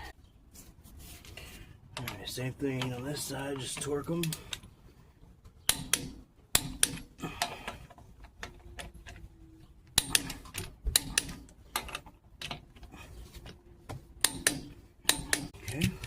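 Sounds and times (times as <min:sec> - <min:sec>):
ratchet wrench clicking on bolts: 0:10.0 - 0:12.6, 0:14.2 - 0:15.7.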